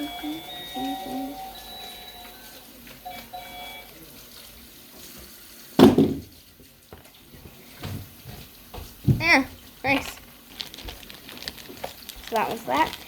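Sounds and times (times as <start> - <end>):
slime squelching: 9.2 - 13.0.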